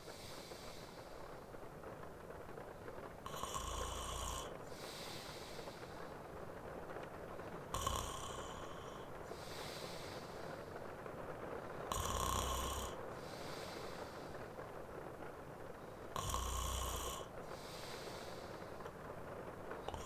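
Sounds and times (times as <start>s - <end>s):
soft breath out: 0.0s - 1.4s, 3.3s - 6.4s, 7.7s - 14.7s, 16.0s - 18.9s
rain hiss: 0.0s - 20.0s
man snoring: 3.3s - 5.8s, 7.7s - 10.3s, 11.9s - 14.1s, 16.1s - 18.4s.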